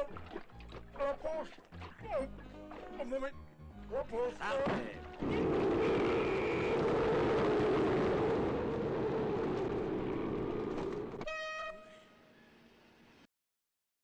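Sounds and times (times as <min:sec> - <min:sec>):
short horn-like toot: 0:11.2 - 0:12.5.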